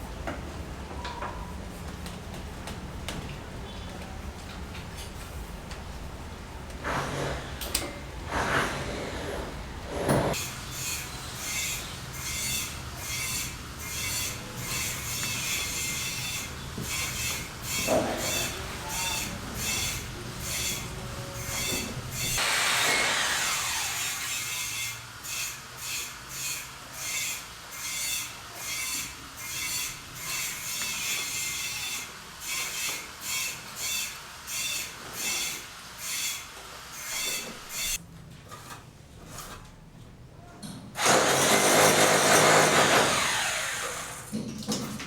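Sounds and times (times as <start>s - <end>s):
hand tool strokes on wood: 8.3s - 24.1s
power tool winding down: 41.0s - 44.3s.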